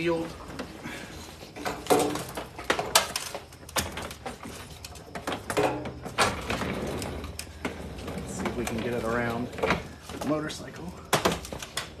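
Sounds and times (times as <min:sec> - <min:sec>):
knocks and clatters: 0:01.6 - 0:10.3.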